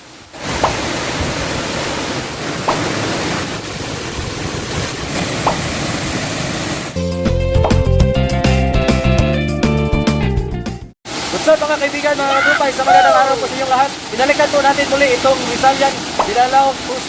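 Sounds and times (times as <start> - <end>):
waterfall rushing water: 0.0 - 7.0, 11.1 - 17.0.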